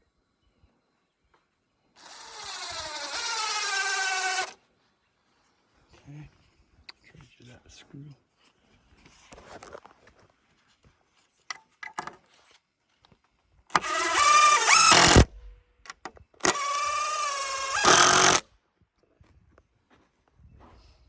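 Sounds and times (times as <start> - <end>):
power drill driving screws into wood: 2.0 - 4.6, 13.7 - 18.4.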